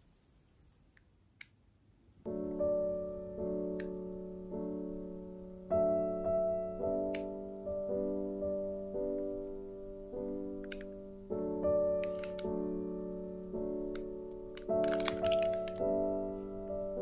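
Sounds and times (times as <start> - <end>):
click: 1.0 - 1.6, 3.8 - 4.0, 10.6 - 10.9, 12.0 - 12.5
slow piano chords: 2.2 - 17.0.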